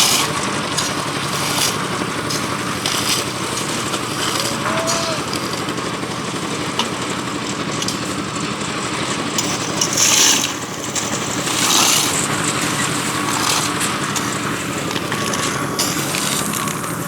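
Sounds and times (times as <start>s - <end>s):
concrete mixer engine running: 0.0s - 17.0s.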